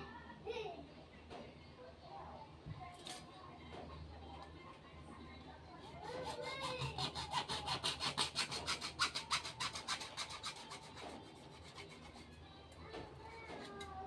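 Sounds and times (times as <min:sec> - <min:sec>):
hand saw cutting plastic pipe: 0:06.0 - 0:12.3.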